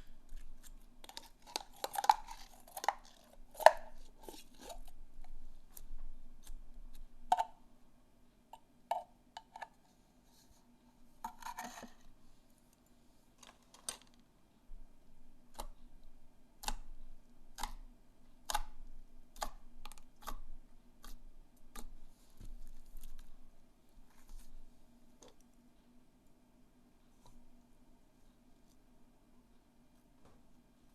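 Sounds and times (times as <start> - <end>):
crackly slime squish: 0.0 - 5.0.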